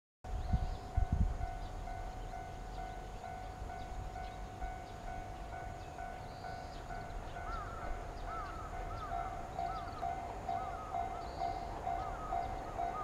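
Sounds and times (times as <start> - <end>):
wind buffeting microphone: 0.3 - 2.8.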